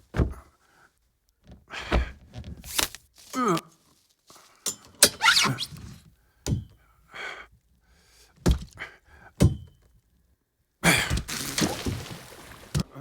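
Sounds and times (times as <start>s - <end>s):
hollow thuds aboard a boat: 0.0s - 0.5s, 6.4s - 6.8s, 8.4s - 8.8s, 9.4s - 9.9s
short pitched creak: 5.2s - 6.0s.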